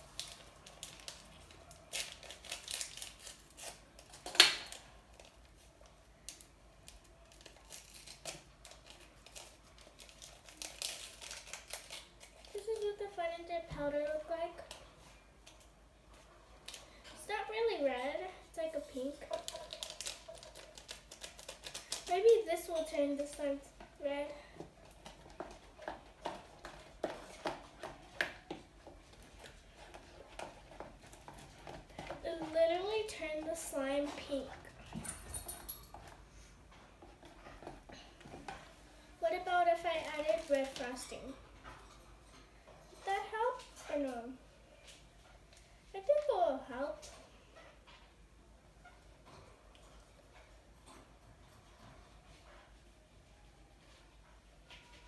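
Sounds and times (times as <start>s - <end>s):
candy packet crinkling: 0.0s - 13.3s, 18.9s - 23.6s, 39.7s - 41.1s.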